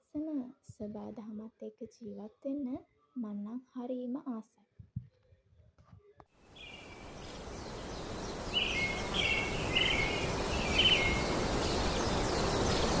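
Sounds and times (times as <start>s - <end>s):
small bird chirping: 6.4s - 13.0s
steady rushing background: 6.8s - 13.0s.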